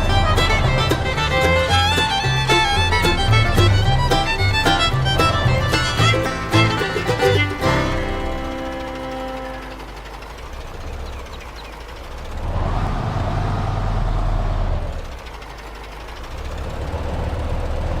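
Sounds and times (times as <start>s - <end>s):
model vehicle motor whine: 7.6s - 14.8s.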